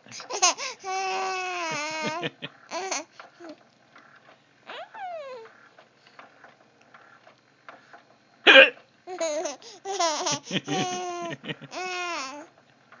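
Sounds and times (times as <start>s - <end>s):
voice assistant laughing: 1.6s - 2.8s, 10.2s - 11.9s
person hiccuping: 8.5s - 8.8s.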